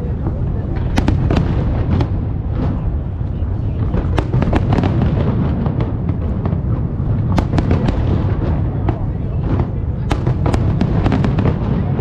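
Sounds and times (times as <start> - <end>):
sharp firework cracks: 0.2 - 12.0.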